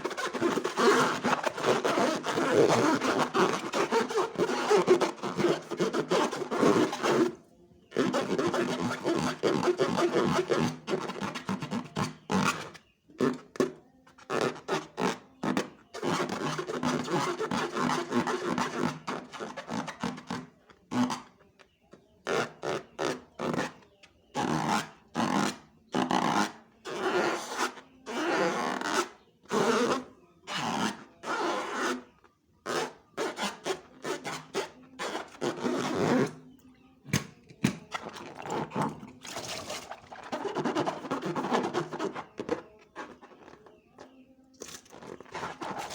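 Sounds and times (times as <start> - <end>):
slime squelching: 37.1 - 43.6.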